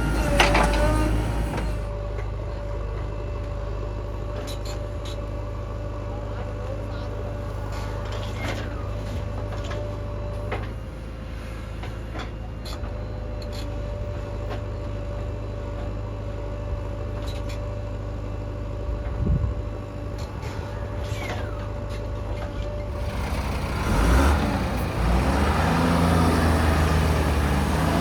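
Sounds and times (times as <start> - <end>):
diesel engine whining: 0.0 - 28.0.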